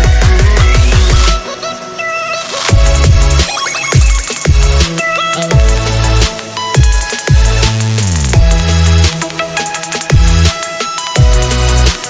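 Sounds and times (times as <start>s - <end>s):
drum and bass music: 0.0s - 12.0s
synth lines: 0.0s - 12.0s
heavy bass drops: 2.7s - 9.3s, 10.0s - 10.5s, 11.2s - 12.0s.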